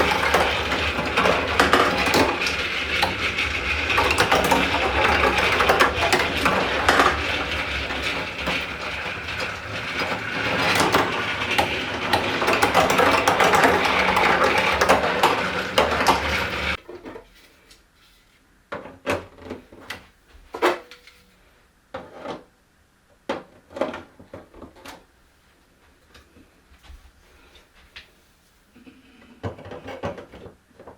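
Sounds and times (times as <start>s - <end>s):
marbles rattling down a track: 0.0s - 16.8s.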